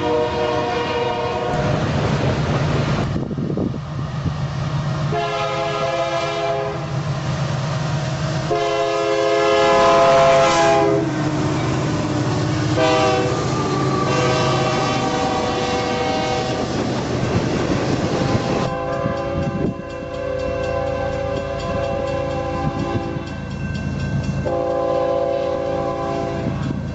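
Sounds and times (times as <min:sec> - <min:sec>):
locomotive air horn blasts: 0:00.0 - 0:01.8, 0:05.1 - 0:07.0, 0:08.4 - 0:16.8, 0:18.0 - 0:23.4, 0:24.4 - 0:26.7
low rumble of train: 0:00.0 - 0:26.9.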